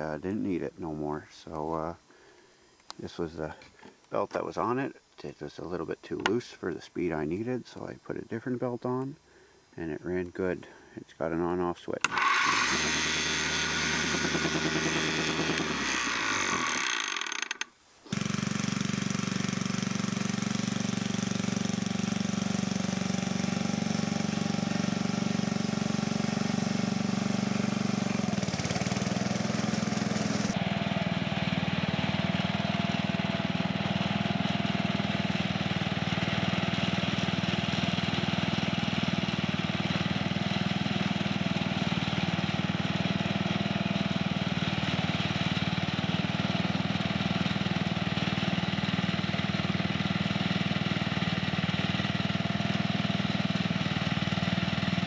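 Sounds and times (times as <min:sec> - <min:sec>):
bench grinder running: 0:12.0 - 0:30.8.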